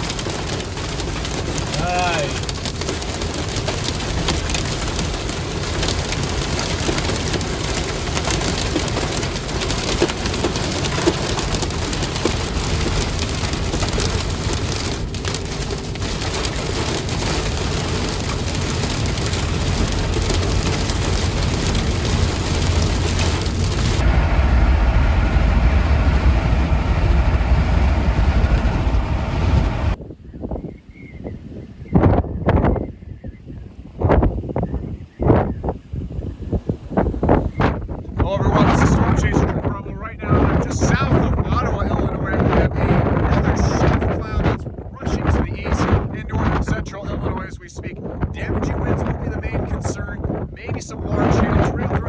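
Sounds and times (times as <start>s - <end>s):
heavy rain pounding on vehicle: 0.0s - 30.0s, 37.2s - 52.0s
low rumble: 3.0s - 30.0s.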